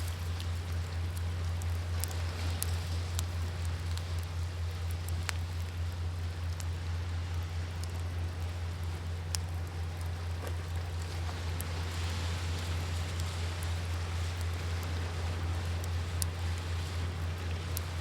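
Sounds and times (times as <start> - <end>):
wood fire crackling: 0.0 - 18.0
sea waves: 9.6 - 18.0.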